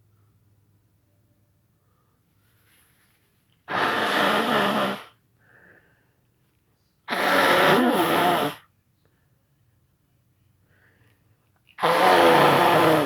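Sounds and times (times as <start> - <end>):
person blowing nose: 3.7 - 5.2, 7.1 - 8.7, 11.8 - 13.0.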